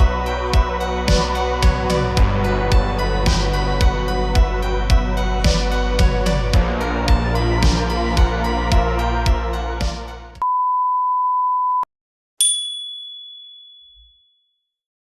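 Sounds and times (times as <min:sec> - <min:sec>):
music with steady beat: 0:00.0 - 0:10.4
bright ding: 0:12.4 - 0:14.2.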